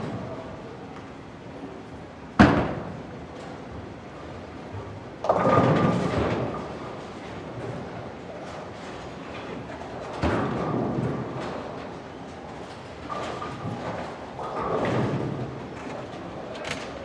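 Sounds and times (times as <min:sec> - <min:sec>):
clatter of pins and machinery: 0:04.8 - 0:17.0.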